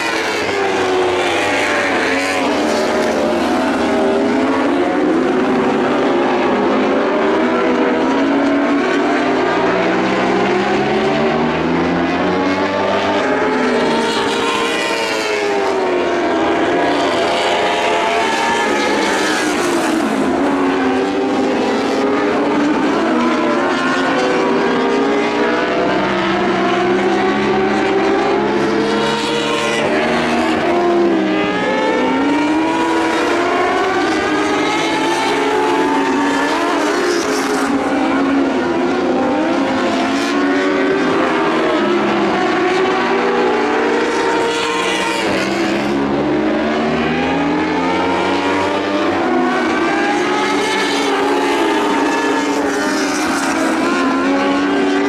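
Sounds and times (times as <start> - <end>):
racing car engines: 0.0 - 55.0.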